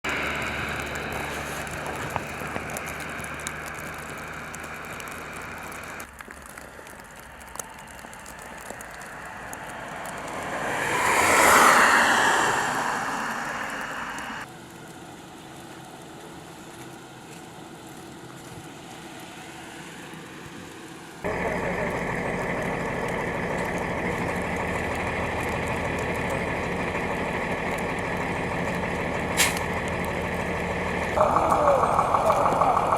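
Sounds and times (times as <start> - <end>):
light wind: 0.1 - 32.9
vehicle passing: 7.8 - 14.5, 31.1 - 32.9.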